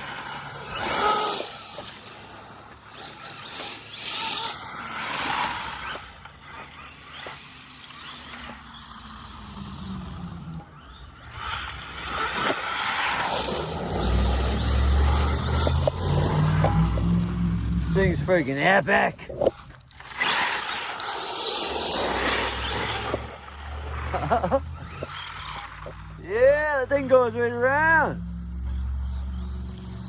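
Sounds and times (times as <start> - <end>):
electric motor whining: 0.0 - 18.6, 19.4 - 26.3, 26.9 - 30.0
tyres crunching gravel: 10.7 - 17.2, 17.8 - 27.4.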